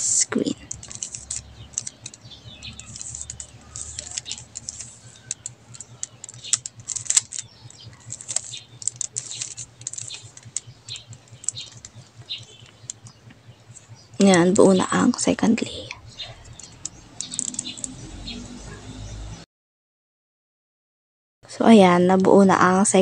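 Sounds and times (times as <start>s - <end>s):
puzzle cube plastic clicks: 0.0s - 13.1s, 16.4s - 17.9s.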